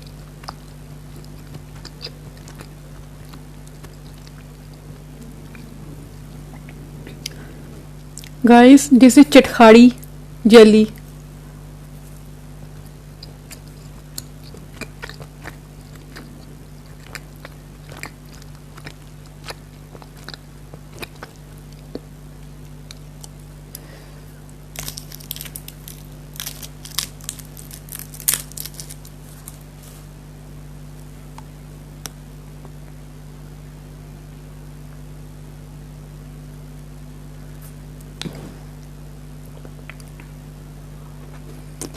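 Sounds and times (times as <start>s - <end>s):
candy crunching: 24.5s - 30.1s.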